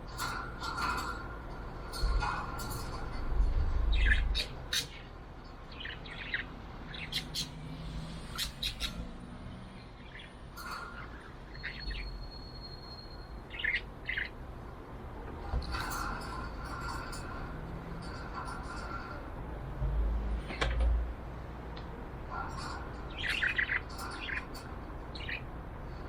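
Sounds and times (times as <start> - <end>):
budgerigar chirping: 8.3 - 9.0.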